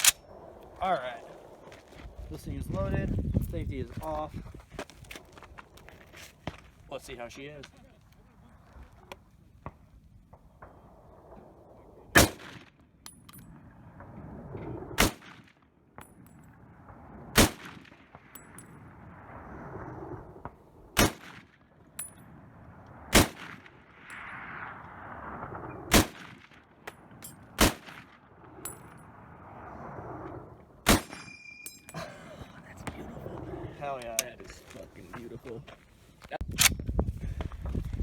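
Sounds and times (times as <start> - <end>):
rifle shots: 12.1 - 12.7, 15.0 - 15.5, 17.4 - 18.3, 21.0 - 21.6, 23.1 - 24.8, 25.9 - 26.6, 27.5 - 28.2, 30.8 - 31.6.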